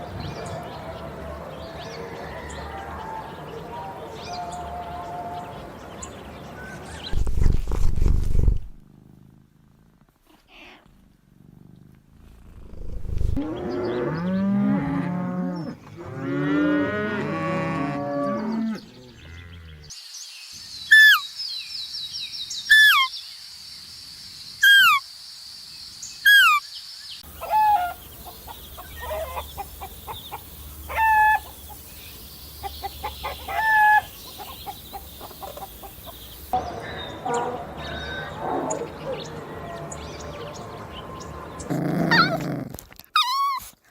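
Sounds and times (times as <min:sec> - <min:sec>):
cow mooing: 0:13.4 - 0:19.9
steady high hiss: 0:20.0 - 0:36.6.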